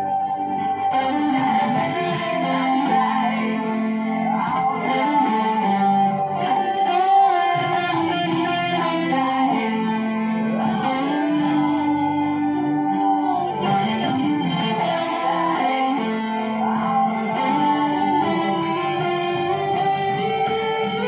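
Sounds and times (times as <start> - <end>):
electric guitar lead melody: 0.0 - 21.0.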